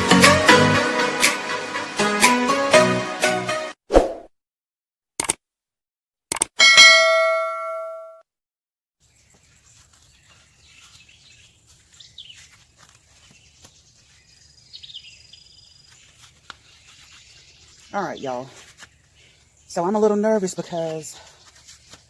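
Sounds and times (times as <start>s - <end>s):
bell-like chime: 6.6s - 8.2s.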